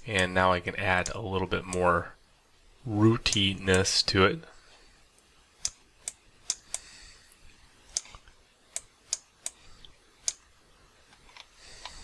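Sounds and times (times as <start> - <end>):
computer mouse clicking: 5.6 - 6.9, 7.9 - 9.6, 10.2 - 10.4.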